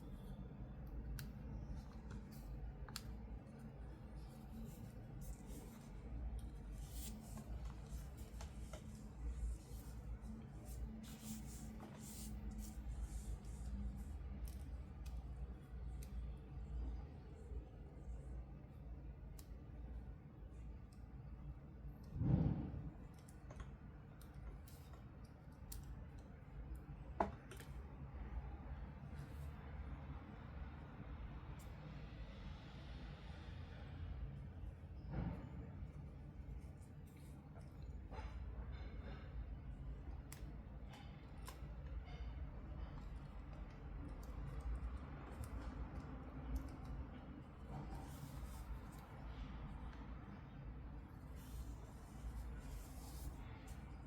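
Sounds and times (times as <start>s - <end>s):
low steady hum: 0.0s - 54.0s.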